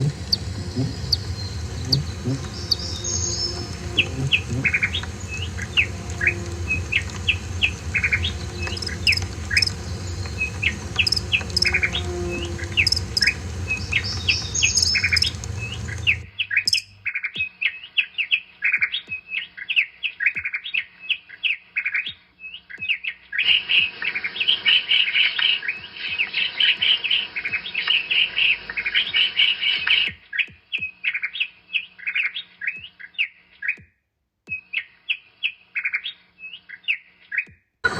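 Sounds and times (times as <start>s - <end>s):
low steady hum: 0.0s - 17.1s
small birds chirping: 0.0s - 37.6s.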